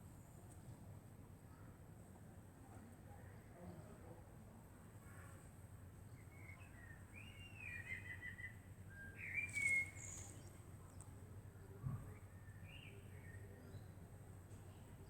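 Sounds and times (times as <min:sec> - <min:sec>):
bird chirps: 0:09.0 - 0:10.6.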